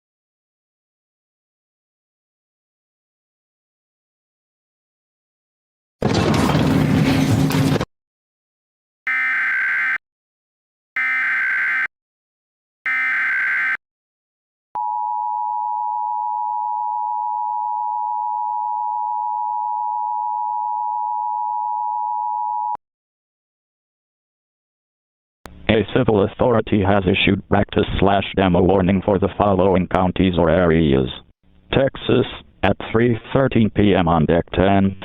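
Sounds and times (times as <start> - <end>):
screechy digital data tones: 9.1 - 10.0, 11.0 - 11.9, 12.9 - 13.8
two-tone attention signal: 9.1 - 10.0, 11.0 - 11.9, 12.9 - 13.8.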